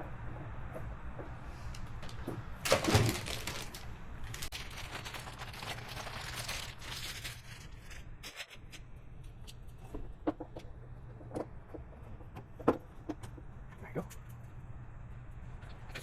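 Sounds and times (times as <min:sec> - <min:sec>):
crinkly rustling: 0:02.0 - 0:08.6.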